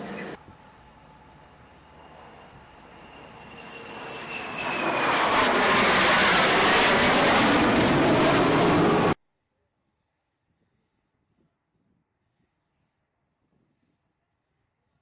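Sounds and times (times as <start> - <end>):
aircraft engine roar: 0.0 - 9.2
high engine whine: 0.0 - 9.2.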